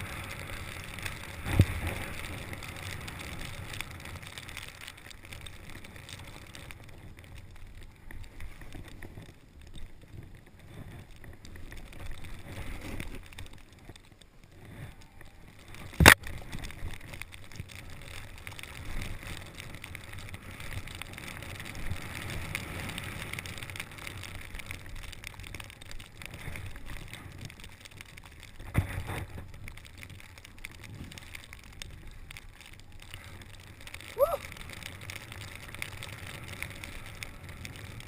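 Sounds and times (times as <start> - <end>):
snowboard scraping through snow: 0.0 - 9.3, 10.0 - 13.8.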